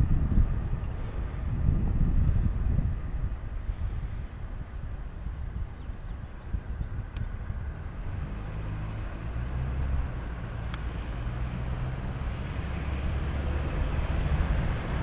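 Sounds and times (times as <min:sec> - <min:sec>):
road traffic rumble: 0:00.0 - 0:15.0
wind on camera microphone: 0:00.0 - 0:15.0
light click: 0:07.1 - 0:07.3.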